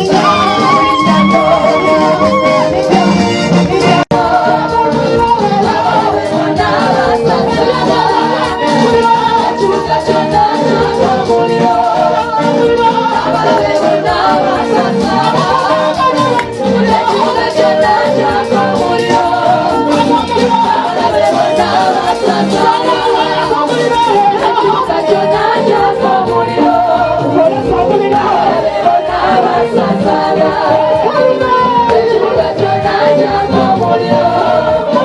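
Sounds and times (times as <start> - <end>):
congregation singing: 0.0 - 35.0
loud music with steady beat: 0.0 - 35.0.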